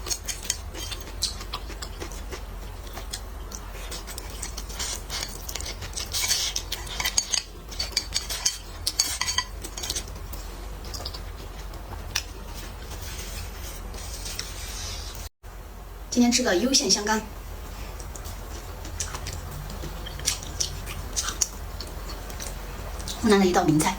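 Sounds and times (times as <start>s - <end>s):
chewing: 0.0s - 14.5s, 18.0s - 23.2s
utensils scraping dishes: 4.5s - 10.2s.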